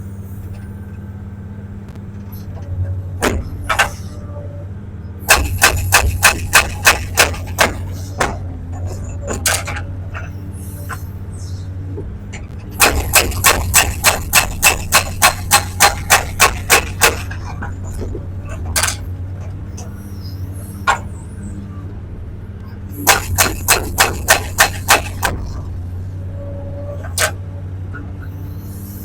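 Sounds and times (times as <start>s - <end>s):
diesel engine running: 0.0s - 29.0s
hydraulic breaker hammering stone: 5.3s - 9.8s, 12.8s - 19.0s, 23.0s - 25.6s.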